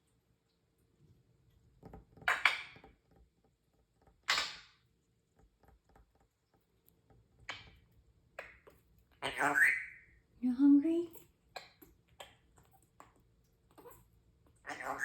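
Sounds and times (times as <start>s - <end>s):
parrot calling: 9.2s - 10.2s, 14.6s - 15.0s.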